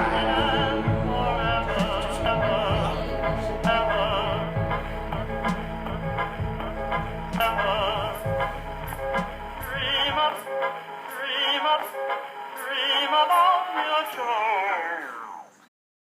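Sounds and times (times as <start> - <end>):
bass and beat: 0.0 - 10.3
wordless vocal melody with vibrato: 0.0 - 11.9.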